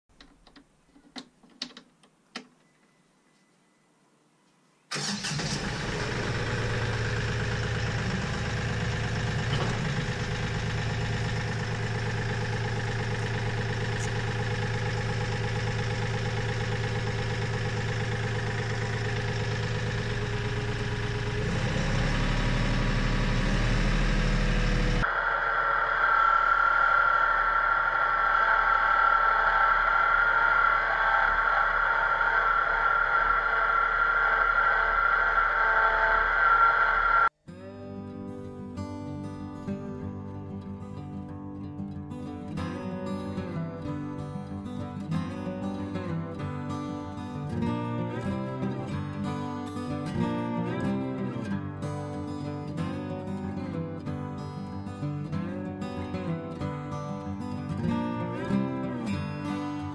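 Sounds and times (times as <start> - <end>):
engine running: 4.9 - 37.3
engine with high whine: 4.9 - 37.4.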